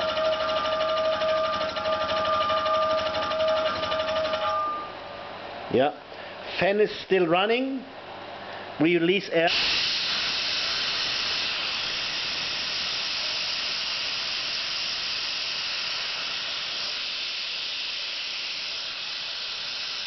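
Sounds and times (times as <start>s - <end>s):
compressed air hissing: 9.4s - 20.0s.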